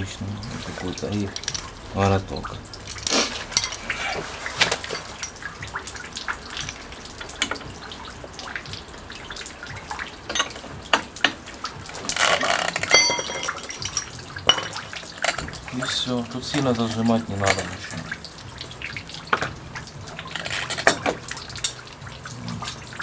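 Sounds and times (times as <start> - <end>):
metal tools clinking: 1.3 - 1.7, 2.9 - 5.4, 10.3 - 10.7, 12.1 - 15.5, 16.4 - 18.1, 18.8 - 19.6
metallic clank: 2.9 - 5.4, 12.2 - 15.6.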